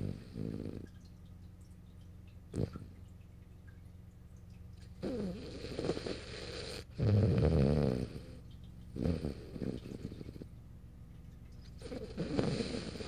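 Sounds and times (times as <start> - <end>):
dog snoring: 0.0 - 0.9, 2.5 - 2.9, 5.0 - 10.5, 11.8 - 13.0.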